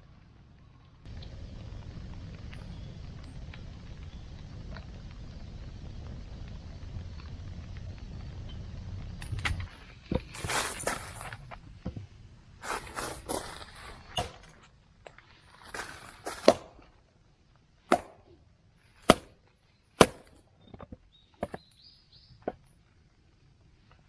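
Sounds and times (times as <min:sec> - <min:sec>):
rustling and scraping handling: 0:09.2 - 0:17.0.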